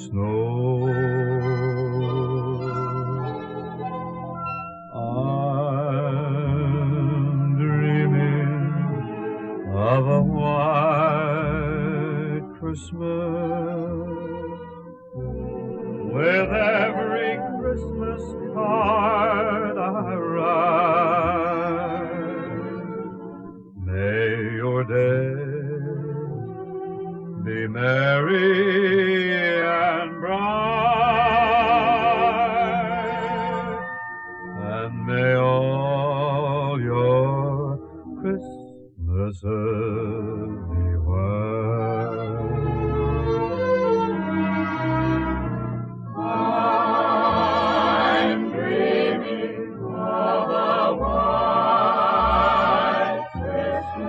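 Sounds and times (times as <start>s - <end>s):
person singing with vibrato: 0.0s - 3.4s, 4.9s - 9.1s, 16.1s - 22.6s, 27.4s - 33.8s, 34.6s - 42.6s, 46.2s - 54.0s
instrumental accompaniment: 0.0s - 54.0s.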